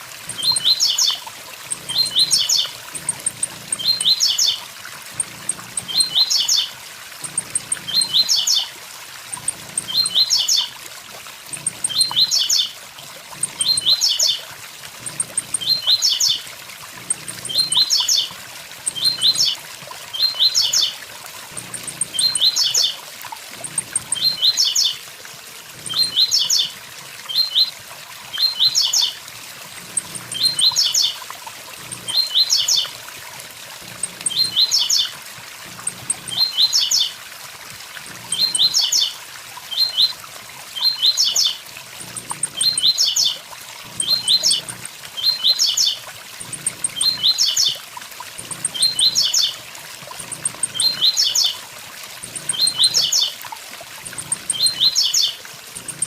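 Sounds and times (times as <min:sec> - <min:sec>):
bird singing: 0:00.3 - 0:04.6, 0:05.2 - 0:08.7, 0:09.3 - 0:10.7, 0:11.5 - 0:12.7, 0:13.4 - 0:14.4, 0:15.0 - 0:16.4, 0:17.1 - 0:20.9, 0:21.6 - 0:23.0, 0:23.6 - 0:25.0, 0:25.8 - 0:26.7, 0:27.3 - 0:27.7, 0:29.9 - 0:31.2, 0:31.8 - 0:32.9, 0:33.9 - 0:35.1, 0:35.7 - 0:37.1, 0:38.1 - 0:39.1, 0:40.8 - 0:47.8, 0:48.4 - 0:49.6, 0:50.2 - 0:51.6, 0:52.2 - 0:53.3, 0:54.1 - 0:56.0.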